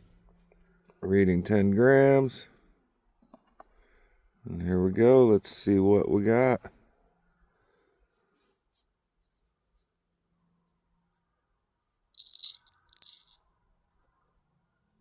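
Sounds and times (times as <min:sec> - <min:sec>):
small metal pieces rattling: 0:11.8 - 0:13.5.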